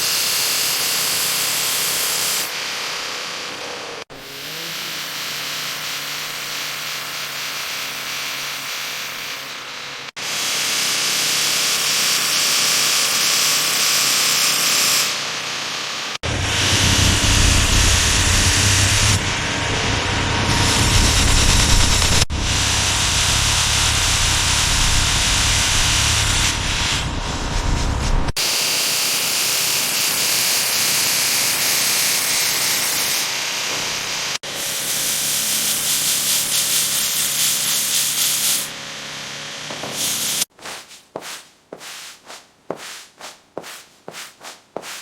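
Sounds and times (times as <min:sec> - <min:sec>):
scouring hiss: 0:40.0 - 0:45.0
rubbing strokes: 0:40.5 - 0:45.0.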